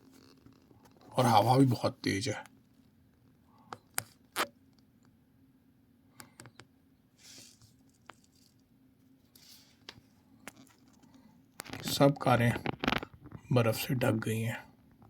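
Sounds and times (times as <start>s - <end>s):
faint clicks and taps: 6.1s - 6.8s, 7.5s - 8.7s, 9.3s - 13.5s.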